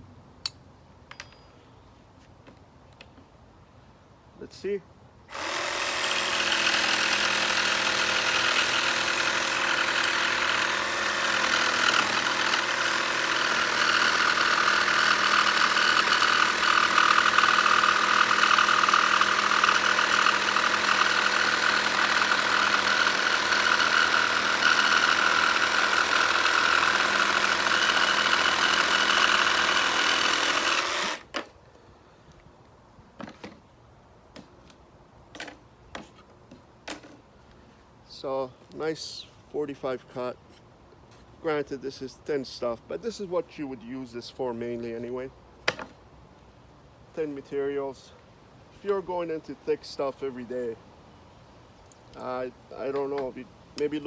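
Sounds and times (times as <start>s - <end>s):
jigsaw cutting: 5.3s - 31.4s.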